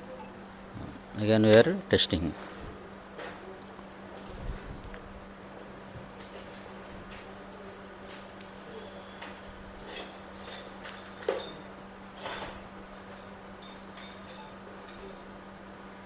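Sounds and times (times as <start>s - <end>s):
low electrical hum: 0.0s - 16.0s.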